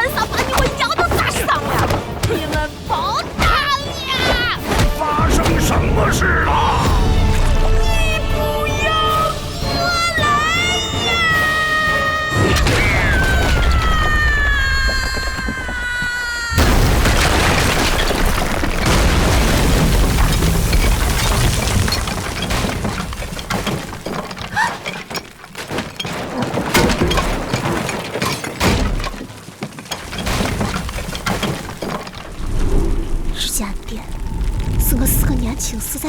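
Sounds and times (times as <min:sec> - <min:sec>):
smashing and clattering: 0:12.5 - 0:32.4.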